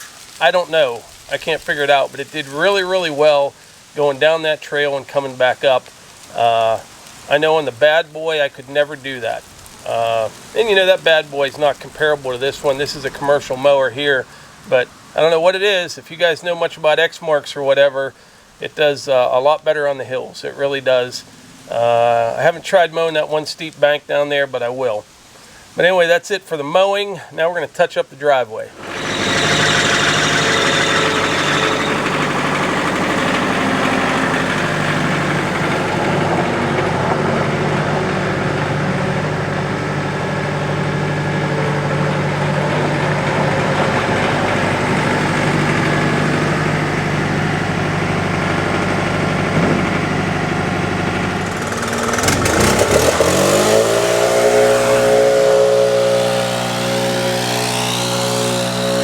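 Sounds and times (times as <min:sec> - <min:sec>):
tractor diesel engine running: 0:00.0 - 0:04.4, 0:05.2 - 0:13.8, 0:28.7 - 0:59.0
engine revving: 0:09.2 - 0:13.6, 0:28.8 - 0:59.0.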